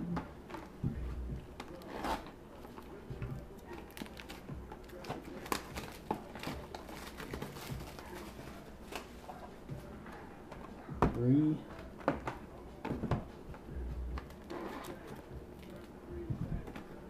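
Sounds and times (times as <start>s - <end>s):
plastic wrap tearing and crinkling: 3.6s - 9.2s.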